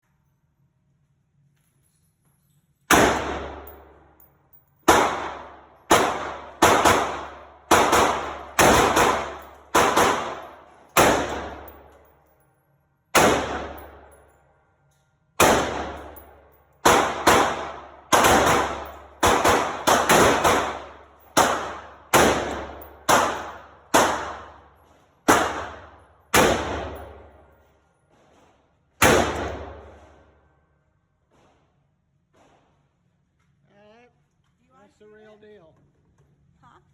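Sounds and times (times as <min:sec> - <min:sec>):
rifle shots with echo: 0:02.9 - 0:04.1, 0:04.8 - 0:12.1, 0:13.2 - 0:14.2, 0:15.4 - 0:27.6, 0:29.0 - 0:30.4.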